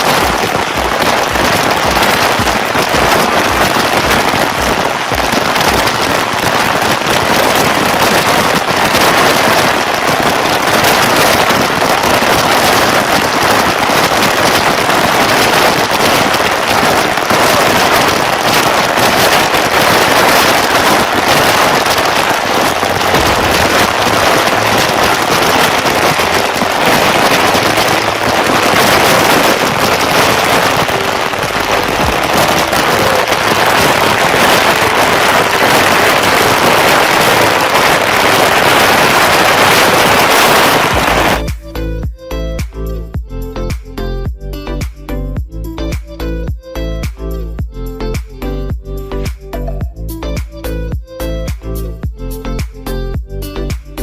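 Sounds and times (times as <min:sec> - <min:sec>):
waterfall rushing: 0:00.0 - 0:41.6.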